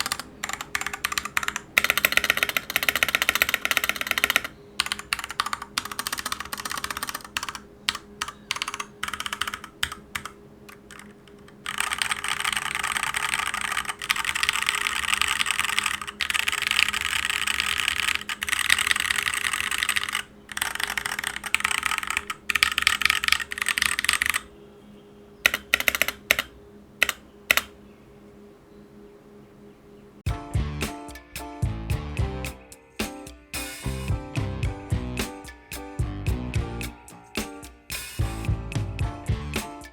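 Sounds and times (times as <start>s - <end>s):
mechanical keyboard typing: 0.0s - 24.5s, 25.4s - 27.8s.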